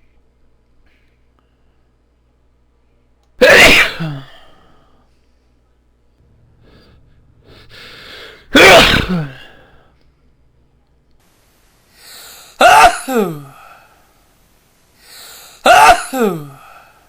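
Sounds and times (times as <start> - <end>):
person sneezing: 3.4 - 4.8, 6.6 - 9.9, 12.0 - 14.0, 15.0 - 17.0
gasping in-breath: 6.5 - 8.5, 11.9 - 12.6, 15.0 - 15.6.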